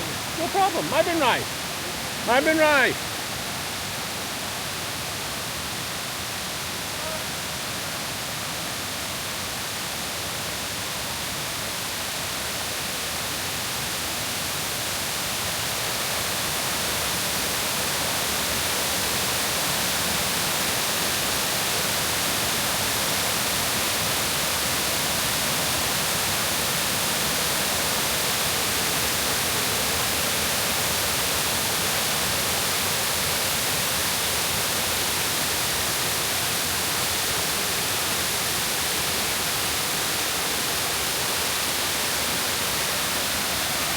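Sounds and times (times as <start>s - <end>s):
waterfall roaring: 0.0s - 3.4s.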